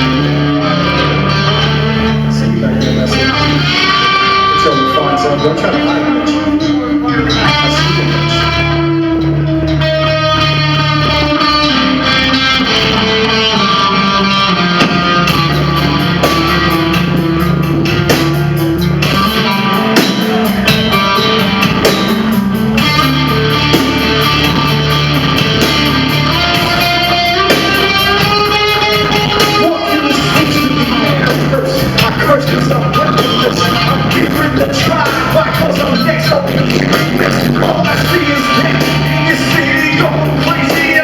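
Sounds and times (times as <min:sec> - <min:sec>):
bass notes: 0:00.0 - 0:41.0
electric guitar melody: 0:00.0 - 0:41.0
steady drum beat: 0:14.8 - 0:41.0.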